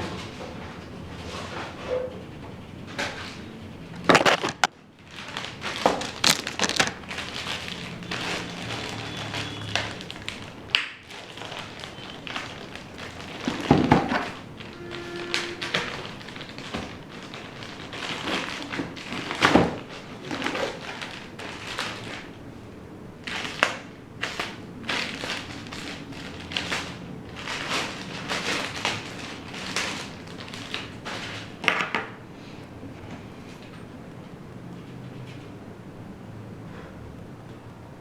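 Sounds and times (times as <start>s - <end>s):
computer parts knocking and tapping: 4.0s - 4.7s.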